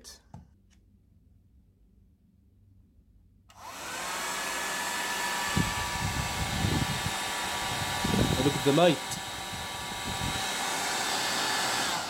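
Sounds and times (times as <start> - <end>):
vacuum cleaner whining: 3.5 - 12.0.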